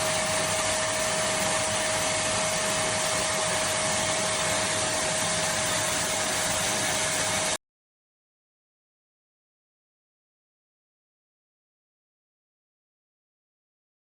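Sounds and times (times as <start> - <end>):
vacuum cleaner running: 0.0 - 7.6.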